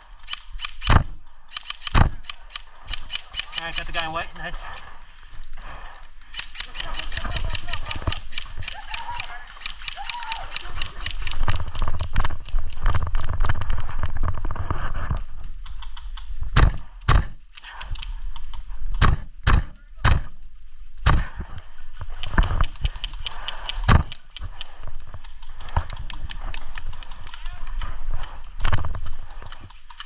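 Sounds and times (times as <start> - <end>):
gear rattle: 0.0 - 16.8
rapid footsteps: 0.0 - 30.0
airsoft rifle shots: 0.2 - 4.2, 16.5 - 17.4, 19.0 - 20.3, 21.0 - 21.4.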